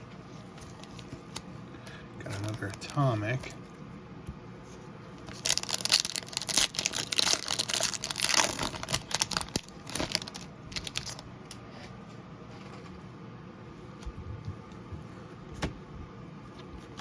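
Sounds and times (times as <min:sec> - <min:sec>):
foil wrapper crinkling and tearing: 0:02.3 - 0:03.4, 0:05.2 - 0:11.6.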